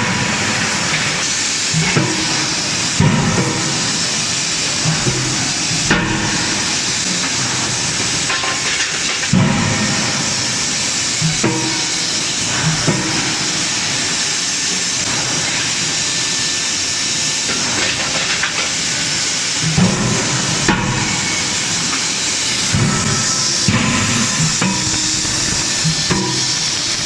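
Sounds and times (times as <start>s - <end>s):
loud steady hiss: 0.0s - 27.0s
forging hammer striking hot metal: 1.8s - 8.7s, 11.2s - 13.9s, 19.6s - 27.0s.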